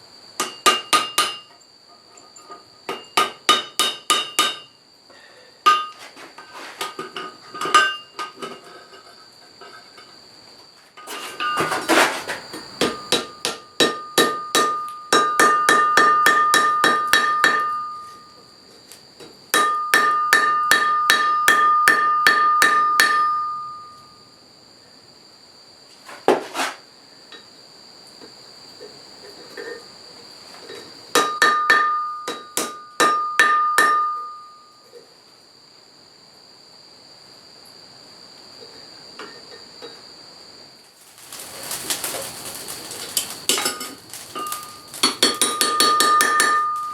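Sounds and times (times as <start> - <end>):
hammer striking iron on anvil: 0.4 - 1.5, 2.9 - 4.7, 12.8 - 18.2, 19.5 - 23.8, 31.2 - 34.4, 44.4 - 46.9.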